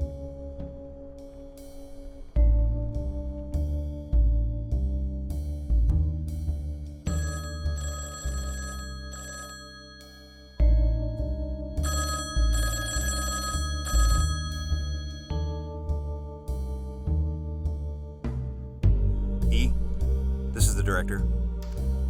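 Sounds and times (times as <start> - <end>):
slow low background music: 0.0 - 22.0
telephone ringing: 7.1 - 10.8, 11.8 - 15.6.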